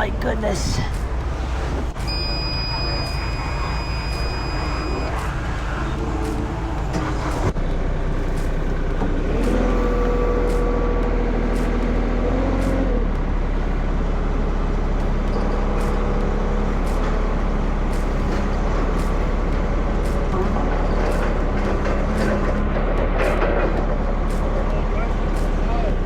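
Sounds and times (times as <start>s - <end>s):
diesel engine running: 0.0s - 26.0s.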